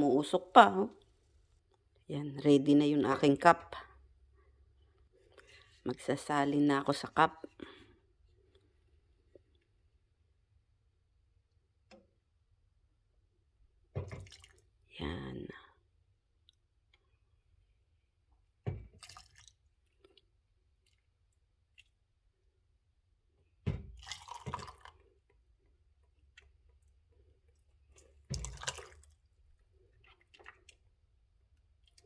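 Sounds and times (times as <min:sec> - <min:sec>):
liquid pouring into a cup: 0:24.0 - 0:25.0
liquid dripping: 0:26.1 - 0:32.0.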